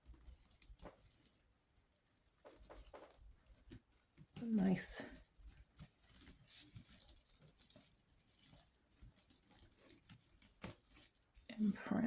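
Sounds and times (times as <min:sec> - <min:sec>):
dry twigs crackling: 0:04.4 - 0:11.8.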